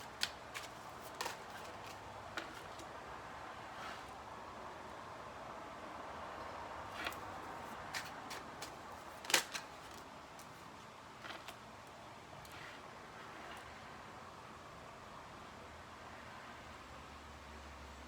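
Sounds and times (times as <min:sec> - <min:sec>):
cards being shuffled: 0:00.0 - 0:02.9, 0:06.9 - 0:11.6.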